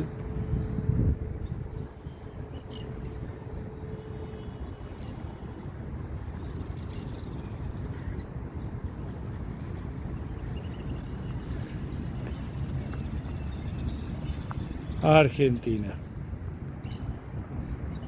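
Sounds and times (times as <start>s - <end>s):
steady low rumble: 0.0s - 6.3s.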